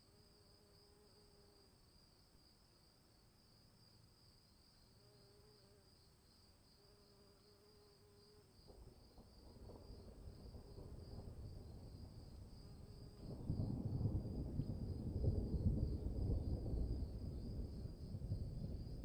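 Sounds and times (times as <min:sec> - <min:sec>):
crickets chirping: 0:00.0 - 0:19.0
distant thunder rumbling: 0:09.2 - 0:12.3, 0:13.0 - 0:19.0.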